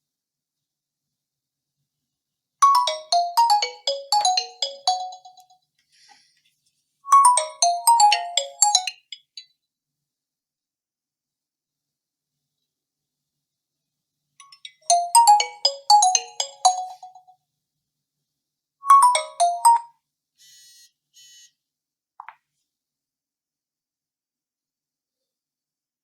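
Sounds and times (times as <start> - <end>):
phone ringtone bell-like notes: 2.6 - 5.6, 7.1 - 9.4, 14.4 - 17.3, 18.8 - 19.9.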